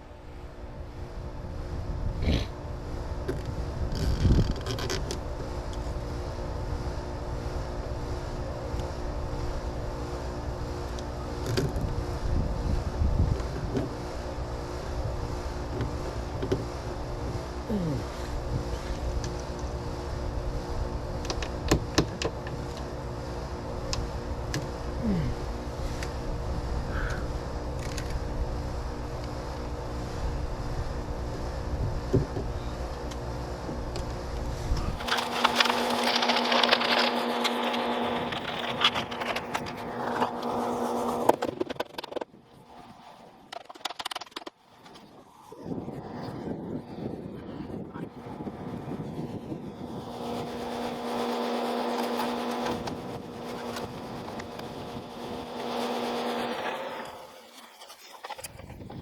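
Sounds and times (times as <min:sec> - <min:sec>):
motor hum: 0:00.0 - 0:59.0
vehicle engine running: 0:05.1 - 0:42.3, 0:48.0 - 0:57.4.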